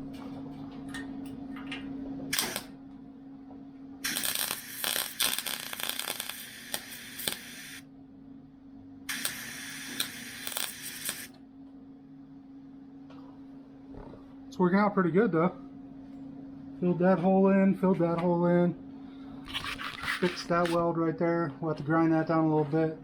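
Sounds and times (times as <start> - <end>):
steady low hum: 0.0 - 23.0
welder crackling and popping: 2.3 - 2.8, 4.0 - 7.8, 9.1 - 11.4.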